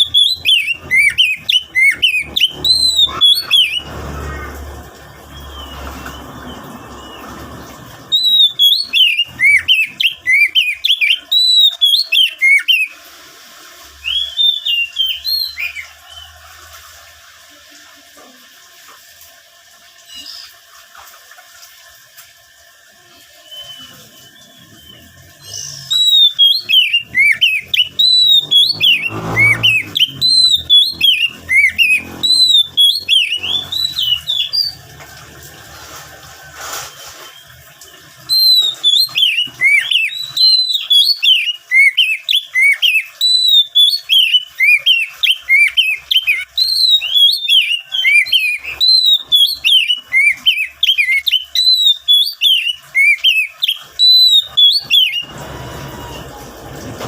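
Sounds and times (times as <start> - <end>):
bird singing whistled chirps: 0.0 - 3.9, 5.2 - 13.0, 14.0 - 16.3, 23.4 - 34.8, 38.3 - 55.3.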